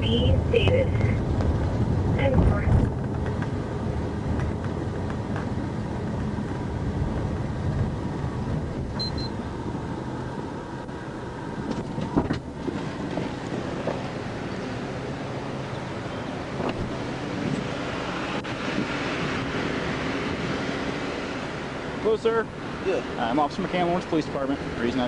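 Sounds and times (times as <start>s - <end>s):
car engine rumble and road noise: 0.0s - 25.0s
short high beeps: 9.0s - 9.4s.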